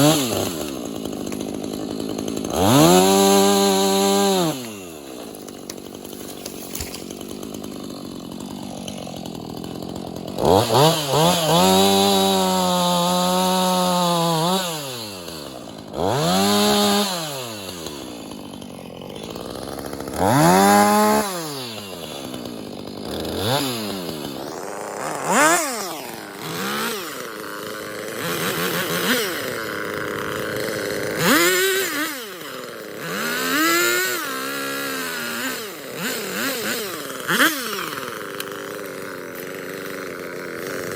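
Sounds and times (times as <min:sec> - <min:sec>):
chainsaw revving and idling: 0:00.0 - 0:40.9.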